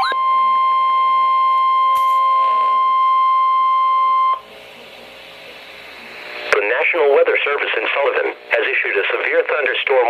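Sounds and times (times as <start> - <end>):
loud steady high alarm tone: 0.0 - 4.5.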